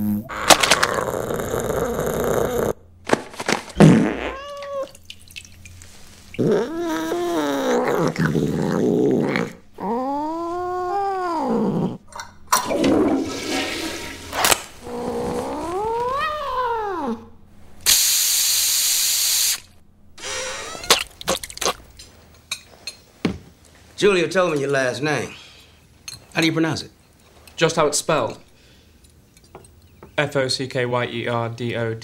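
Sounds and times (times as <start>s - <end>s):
cat meowing: 4.2s - 5.0s, 14.9s - 17.3s.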